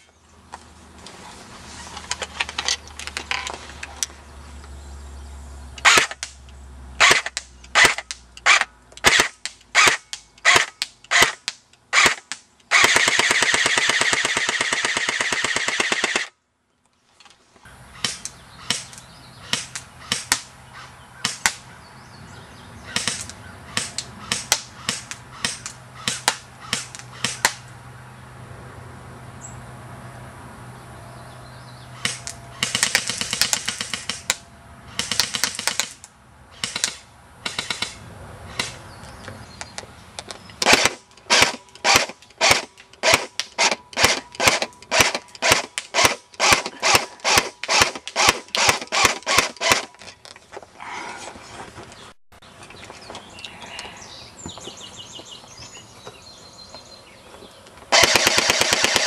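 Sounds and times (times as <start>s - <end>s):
airsoft gun single shots: 7.0s - 16.3s, 40.6s - 49.9s, 57.9s - 59.0s
airsoft gun full-auto burst: 12.0s - 16.3s, 40.6s - 49.9s, 57.9s - 59.0s.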